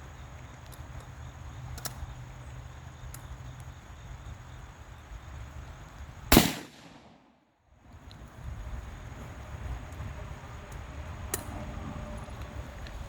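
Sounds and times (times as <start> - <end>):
outdoor background noise: 0.0 - 13.0
loud gunshot with echo: 6.3 - 7.3.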